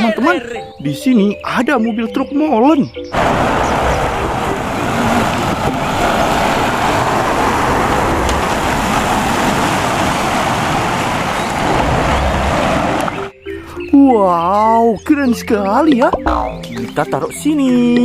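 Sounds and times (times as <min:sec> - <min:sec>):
road traffic rushing and rumbling: 0:03.1 - 0:13.7, 0:16.2 - 0:17.0.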